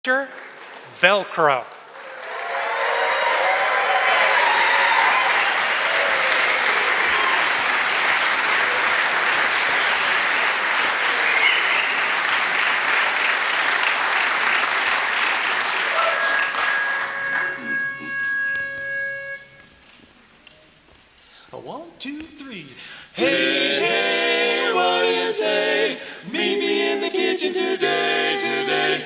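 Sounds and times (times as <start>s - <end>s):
audience applauding: 0.1s - 18.3s
short hummed tones: 16.0s - 19.7s
held steady note: 16.0s - 20.1s.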